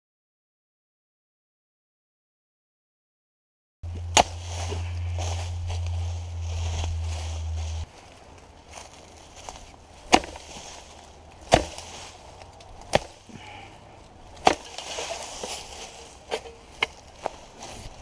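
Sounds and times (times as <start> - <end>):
fire hoe chopping: 3.9 - 7.9, 8.8 - 18.0.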